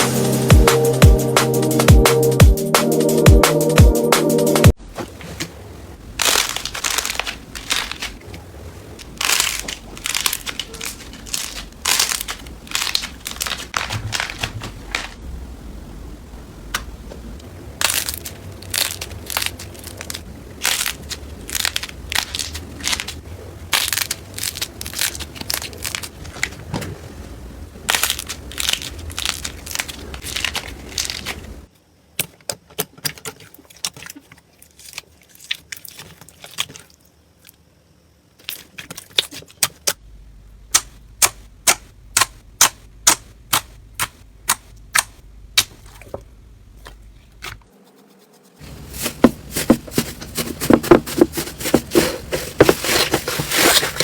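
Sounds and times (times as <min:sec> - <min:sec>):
slime crackling and popping: 0:09.0 - 0:14.5, 0:17.8 - 0:26.2.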